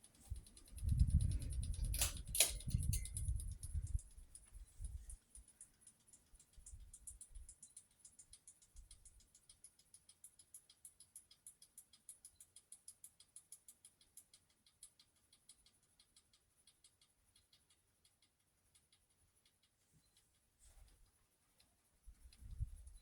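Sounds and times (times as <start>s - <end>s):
ceiling fan running: 0.0s - 5.6s
faint regular ticking: 0.0s - 23.0s.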